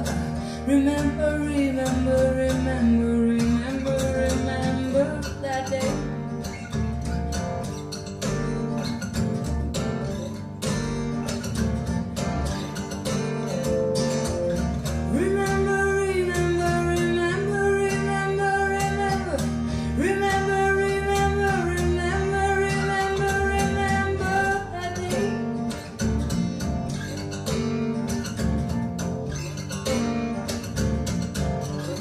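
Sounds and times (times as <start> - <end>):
instrumental music over speakers: 0.0 - 32.0
held melodic line with slides: 12.0 - 26.3.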